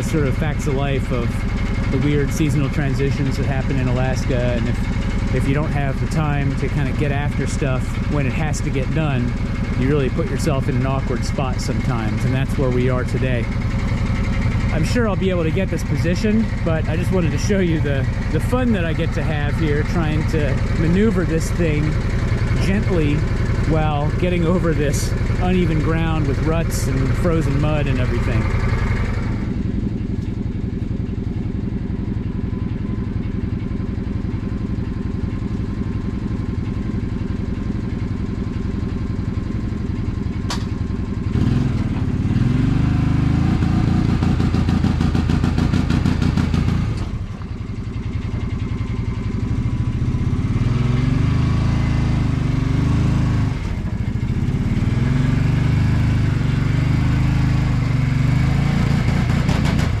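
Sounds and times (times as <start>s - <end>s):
vehicle engine idling and revving: 0.0s - 60.0s
sharp click: 40.5s - 40.8s.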